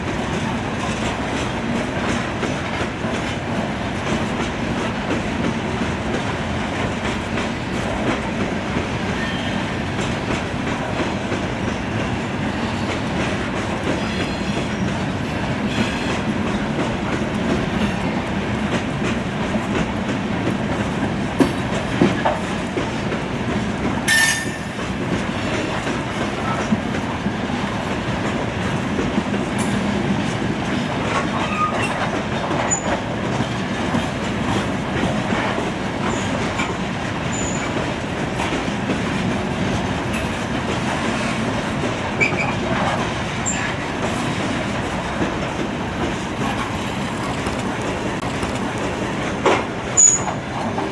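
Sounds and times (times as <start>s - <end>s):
freight train rolling past: 0.0s - 50.9s
wheels clacking over rail joints: 0.1s - 50.9s
high wheel squeal: 9.0s - 9.8s, 13.7s - 16.2s, 24.1s - 25.6s.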